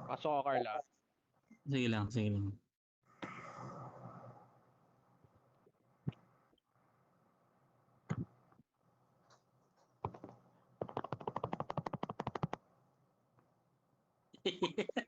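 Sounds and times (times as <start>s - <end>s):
computer keyboard key clicks: 10.1s - 12.6s.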